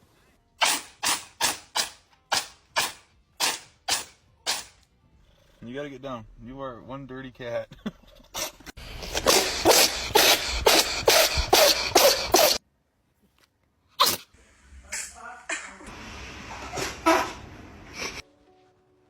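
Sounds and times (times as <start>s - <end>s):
cat sneezing: 8.4s - 12.6s, 14.0s - 14.3s.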